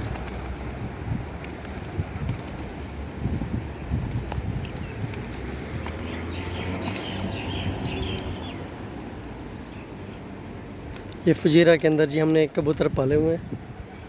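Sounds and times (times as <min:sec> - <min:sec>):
wing flaps: 0:00.0 - 0:02.9.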